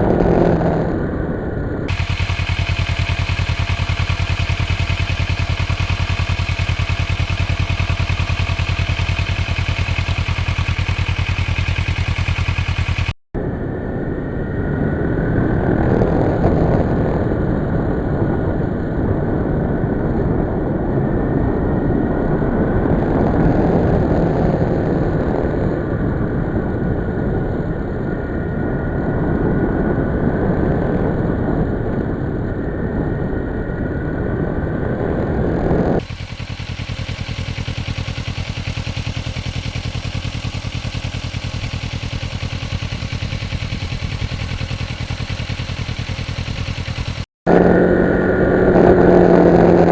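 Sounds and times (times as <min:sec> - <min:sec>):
road noise rushing: 0:00.0 - 0:13.1
motorcycle engine running: 0:00.0 - 0:13.2, 0:15.3 - 0:49.9.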